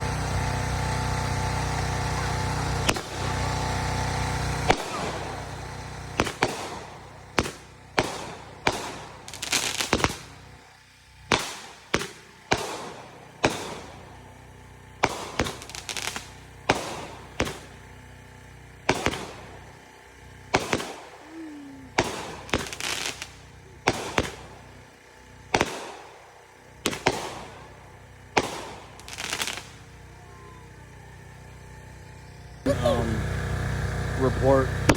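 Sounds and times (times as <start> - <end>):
fireworks banging: 0.0 - 10.4, 11.3 - 14.2, 14.9 - 18.0, 18.8 - 19.8, 20.4 - 24.8, 25.4 - 31.2.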